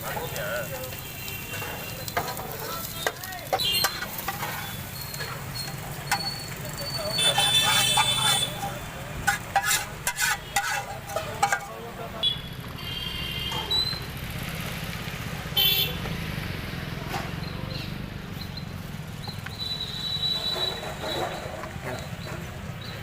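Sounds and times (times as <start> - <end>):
traffic rumble: 0.0 - 23.0
high-pitched horn toots: 7.2 - 8.7.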